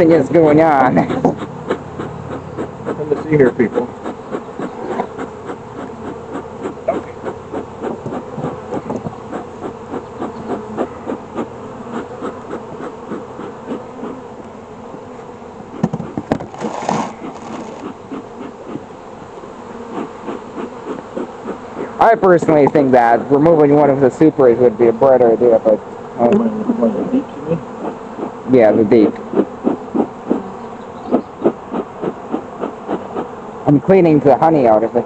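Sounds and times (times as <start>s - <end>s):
bees buzzing: 0.0s - 35.0s
scraping noise: 16.5s - 17.9s.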